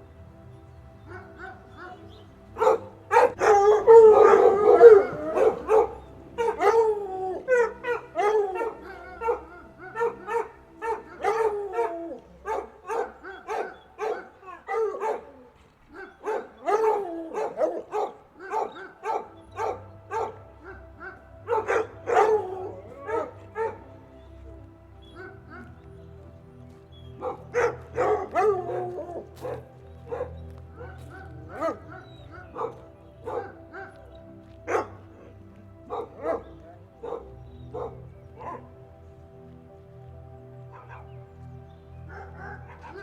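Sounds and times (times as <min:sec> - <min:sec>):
dog barking: 0:01.1 - 0:02.0, 0:02.6 - 0:23.8, 0:25.2 - 0:25.8, 0:27.2 - 0:34.1, 0:34.7 - 0:35.2, 0:35.8 - 0:38.7, 0:40.7 - 0:41.1, 0:42.1 - 0:43.0.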